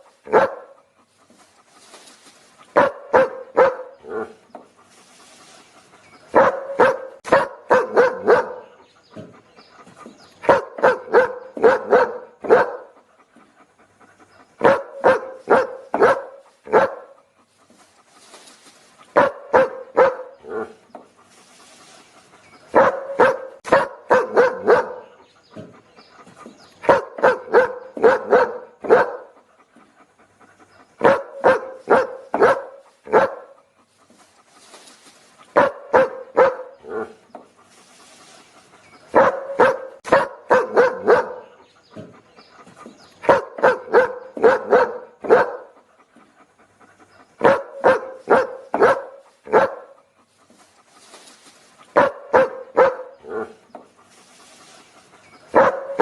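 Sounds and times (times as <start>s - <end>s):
dog barking: 0.0s - 0.8s, 2.7s - 4.4s, 6.3s - 8.8s, 10.4s - 13.0s, 14.6s - 17.2s, 19.2s - 20.8s, 22.7s - 25.2s, 26.8s - 29.4s, 31.0s - 33.6s, 35.5s - 37.2s, 39.1s - 42.1s, 43.2s - 45.8s, 47.4s - 50.0s, 51.9s - 53.6s, 55.5s - 56.0s.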